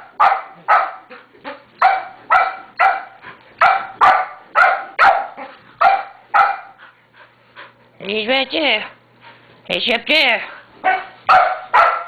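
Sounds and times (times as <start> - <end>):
dog barking: 0.0 - 1.1, 1.8 - 6.8, 10.8 - 12.0.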